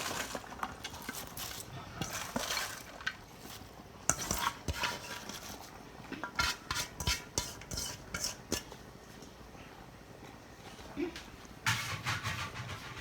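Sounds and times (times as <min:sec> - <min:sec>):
metal spoon stirring in pot: 0:00.0 - 0:09.3.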